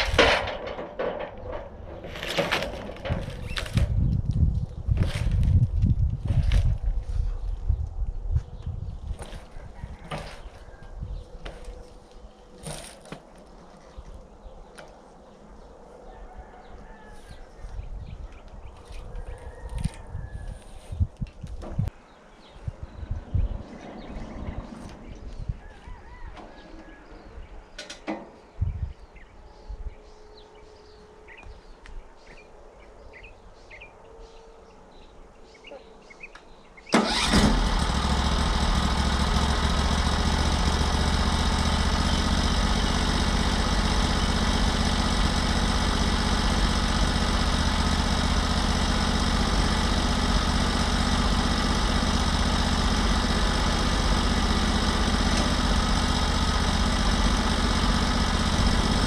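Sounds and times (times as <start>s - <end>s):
sawmill engine running: 37.0s - 59.0s.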